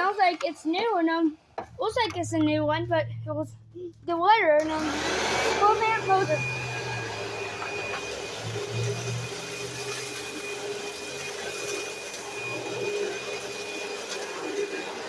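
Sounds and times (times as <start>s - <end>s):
vacuum cleaner running: 4.6s - 15.0s.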